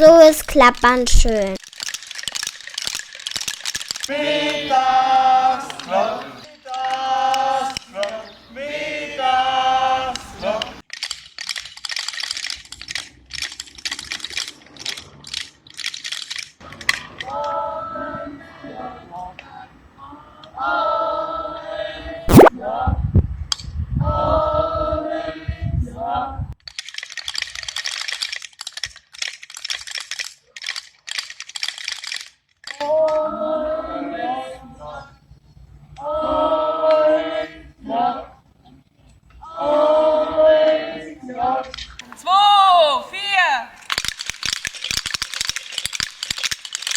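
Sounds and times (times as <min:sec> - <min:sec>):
wooden rattles clattering: 0:01.6 - 0:04.2, 0:43.8 - 0:46.9
voices chanting together: 0:04.1 - 0:10.8, 0:17.1 - 0:23.1, 0:24.0 - 0:26.5, 0:32.8 - 0:35.3, 0:36.0 - 0:38.8, 0:39.4 - 0:43.7.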